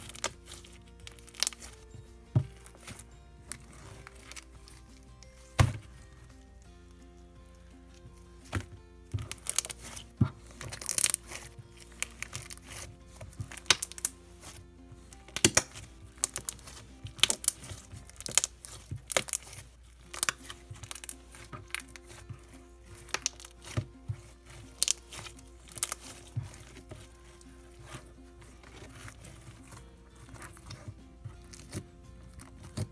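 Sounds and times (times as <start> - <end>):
slime squishing and popping: 0.0 - 6.1, 8.4 - 32.9
soft background music: 0.0 - 32.9.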